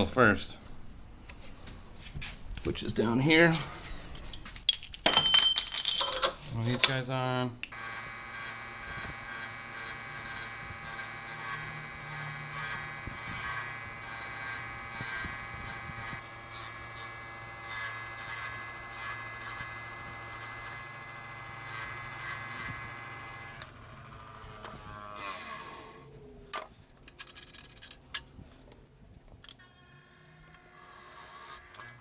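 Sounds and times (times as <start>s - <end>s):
electric motor humming: 7.7s - 26.2s, 29.6s - 32.0s
hissing grinding strokes: 7.7s - 26.2s.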